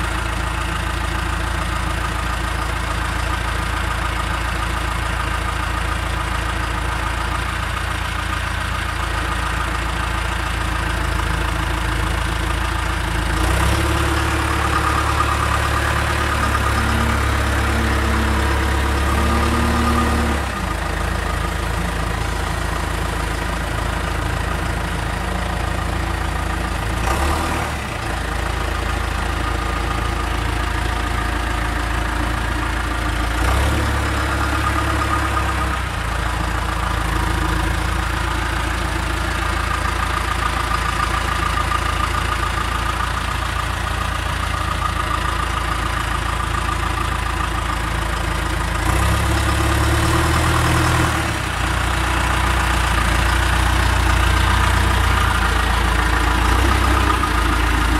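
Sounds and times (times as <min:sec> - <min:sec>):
diesel engine running: 0:00.0 - 0:57.9.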